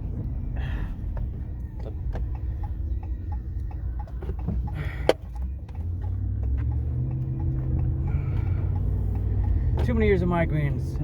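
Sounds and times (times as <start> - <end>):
car interior road noise: 0.0 - 11.0.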